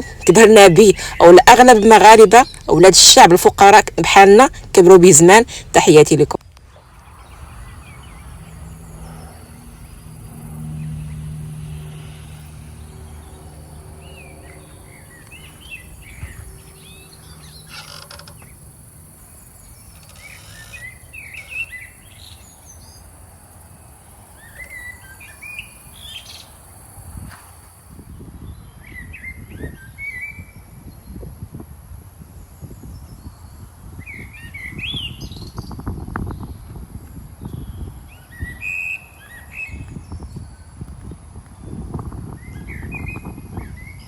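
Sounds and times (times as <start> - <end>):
low hum: 0.0 - 22.7
small birds chirping: 0.0 - 30.4.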